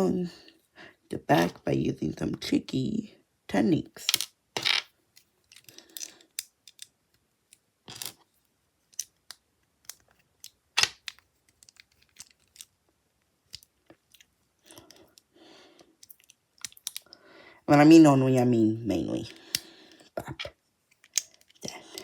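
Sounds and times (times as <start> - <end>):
pieces rustling: 4.0 - 6.9, 7.8 - 15.2
plastic bricks clicking and snapping: 4.0 - 8.3, 8.9 - 12.7, 13.5 - 17.1, 19.2 - 22.0.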